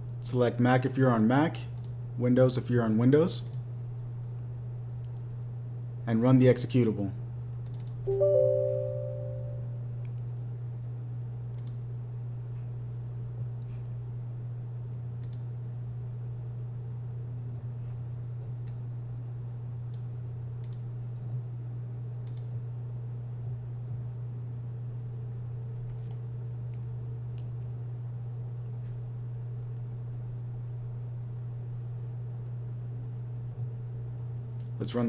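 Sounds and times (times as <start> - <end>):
computer mouse clicking: 15.2 - 15.4.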